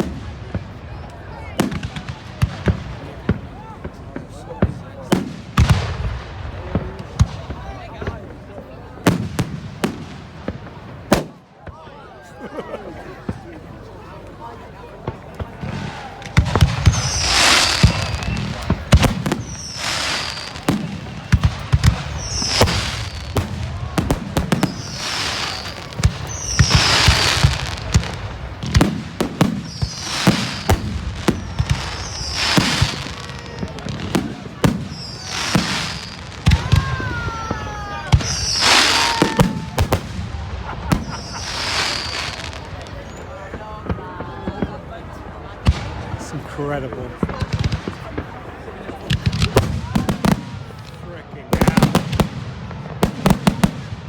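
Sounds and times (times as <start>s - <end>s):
fireworks bursting with hiss: 0.0s - 11.7s, 13.1s - 54.0s
sharp firework cracks: 9.1s - 11.5s, 15.1s - 44.8s, 51.6s - 54.0s.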